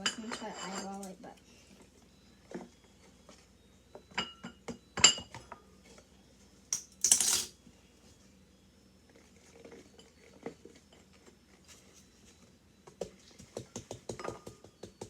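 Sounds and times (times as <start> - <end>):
utensils clinking against dishes: 0.0 - 1.2.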